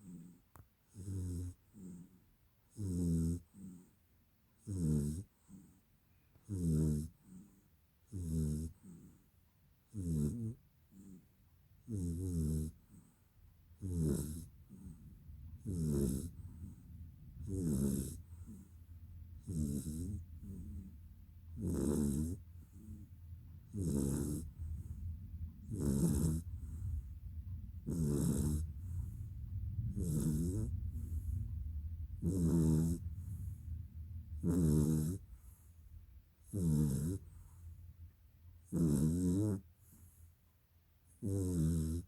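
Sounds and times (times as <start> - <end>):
steady low hum: 0.0 - 42.0
person snoring: 13.8 - 15.0, 15.6 - 16.8, 17.4 - 18.7, 19.4 - 21.0, 21.6 - 23.0, 23.7 - 25.0, 25.6 - 26.9, 27.8 - 29.1, 29.9 - 31.3, 32.2 - 33.3, 34.4 - 35.5, 36.4 - 37.4, 38.7 - 39.6, 41.2 - 42.0.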